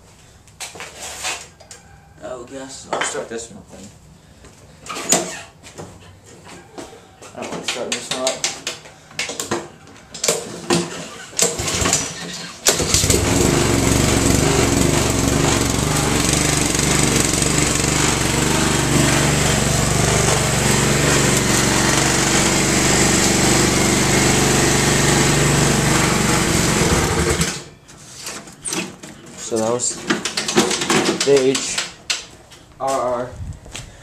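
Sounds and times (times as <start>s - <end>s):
lawn mower engine running: 11.4s - 27.7s.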